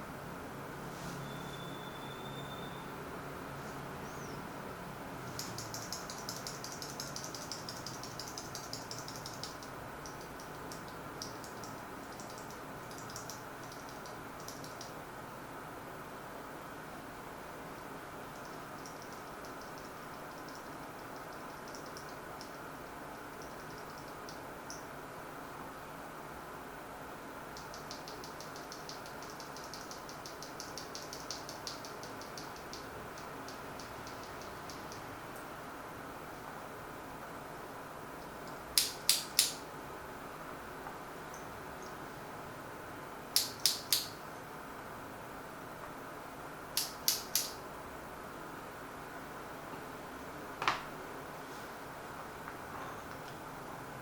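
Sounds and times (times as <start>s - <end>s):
steady background hiss: 0.0s - 54.0s
mechanical keyboard typing: 5.3s - 15.0s, 18.4s - 22.6s, 27.6s - 35.1s.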